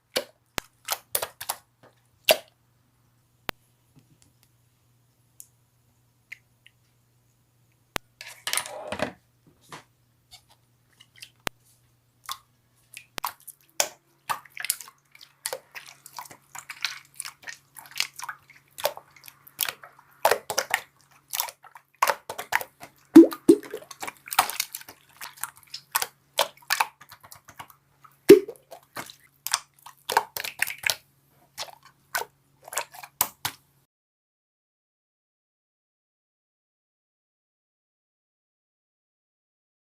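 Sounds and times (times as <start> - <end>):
slime squelch: 0.0 - 2.5, 10.3 - 33.7
slime clicking and popping: 28.3 - 31.0.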